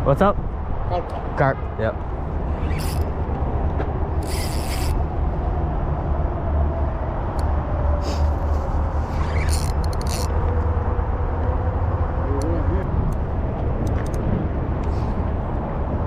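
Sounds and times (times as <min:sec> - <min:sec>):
steady low rumble: 0:00.0 - 0:16.0
fishing reel drag buzzing: 0:02.5 - 0:03.1, 0:04.2 - 0:05.0, 0:09.0 - 0:10.3.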